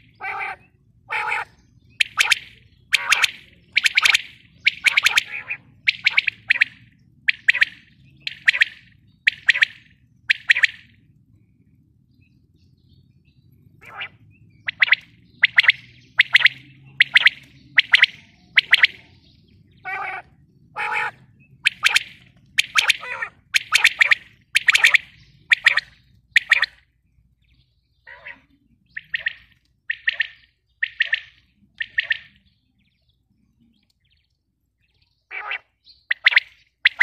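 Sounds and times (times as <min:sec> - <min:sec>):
quail calling: 0:00.0 - 0:10.9, 0:13.8 - 0:19.0, 0:19.8 - 0:26.8, 0:28.1 - 0:32.4, 0:35.3 - 0:37.0.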